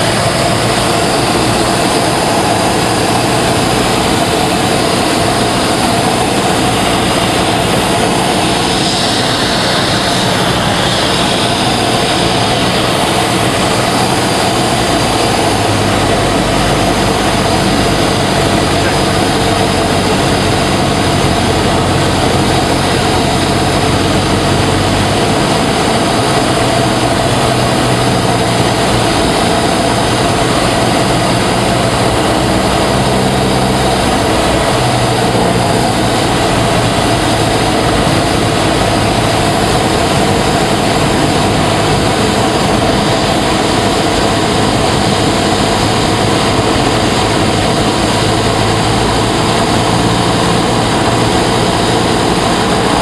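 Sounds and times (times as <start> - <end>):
aircraft engine and propeller drone: 0.0 - 53.0.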